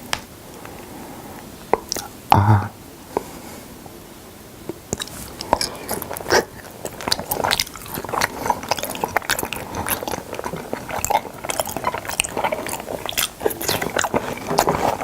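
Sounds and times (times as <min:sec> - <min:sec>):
person chewing food: 0:01.8 - 0:02.2, 0:04.7 - 0:15.0.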